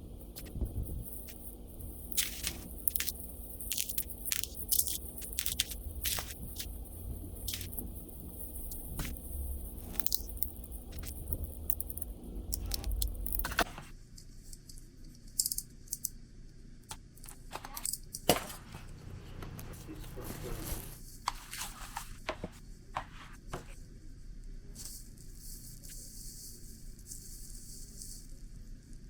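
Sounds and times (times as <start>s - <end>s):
rustling and tearing: 0.2s - 13.7s, 20.2s - 22.3s.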